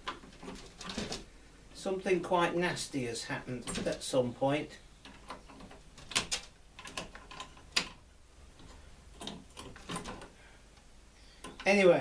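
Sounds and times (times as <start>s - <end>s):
fuses clicking and knocking: 5.0s - 11.8s.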